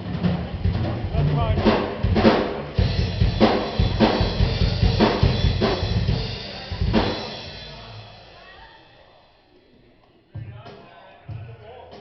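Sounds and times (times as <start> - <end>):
cymbals ringing: 0.9 - 9.7.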